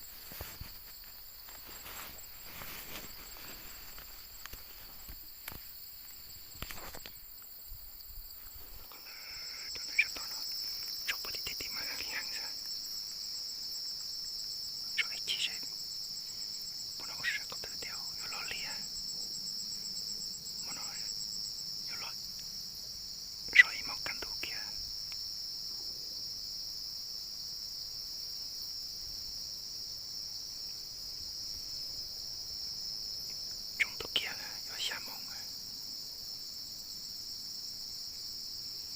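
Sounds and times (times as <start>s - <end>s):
small clicks and rustles: 0.0s - 7.5s
insects chirring: 0.0s - 38.9s.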